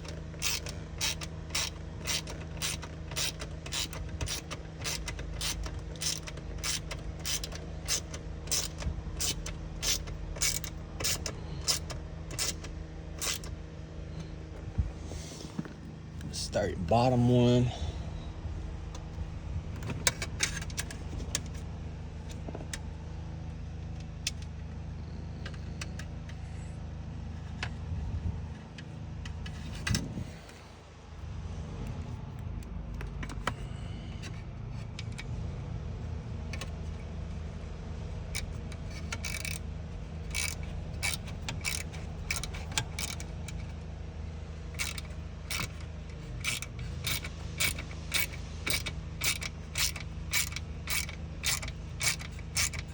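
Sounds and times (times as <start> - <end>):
socket ratchet clicking: 0.0 - 13.5, 38.4 - 43.7, 44.7 - 52.9
low hum: 3.9 - 52.9.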